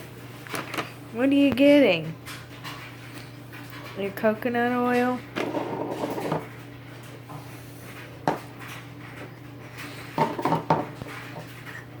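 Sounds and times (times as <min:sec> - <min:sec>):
hard objects knocking together: 0:10.2 - 0:11.5.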